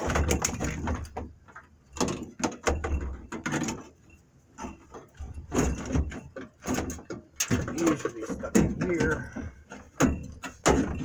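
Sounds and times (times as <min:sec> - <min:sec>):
dull thuds: 0:05.2 - 0:11.0.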